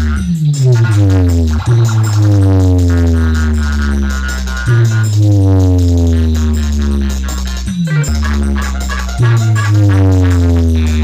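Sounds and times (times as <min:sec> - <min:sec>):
electronic dance music with heavy bass: 0:00.0 - 0:11.0.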